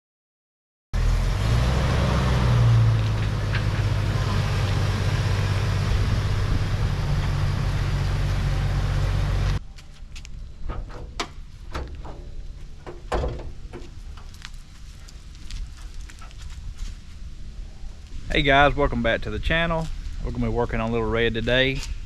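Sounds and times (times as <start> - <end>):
car engine running: 1.0 - 9.6.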